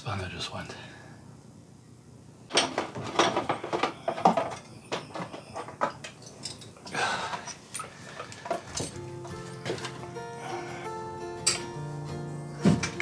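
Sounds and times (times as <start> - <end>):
hand tools clanking on metal: 2.5 - 10.8, 11.4 - 11.8.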